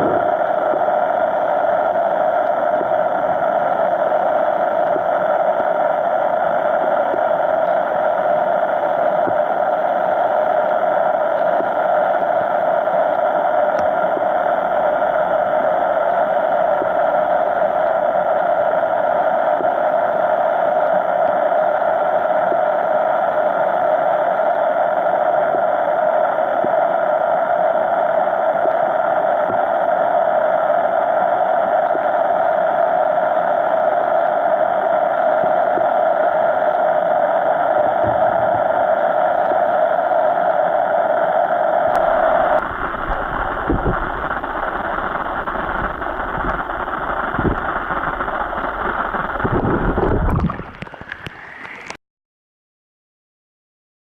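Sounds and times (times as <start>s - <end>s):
stream rushing: 42.0s - 52.0s.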